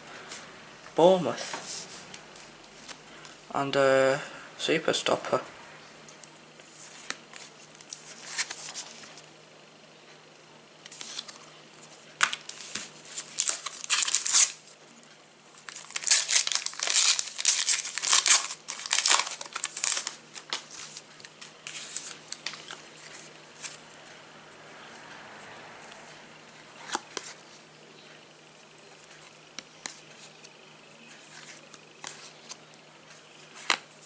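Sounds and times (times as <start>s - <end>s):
foil wrapper tearing and crinkling: 12.3s - 14.6s, 15.7s - 21.0s.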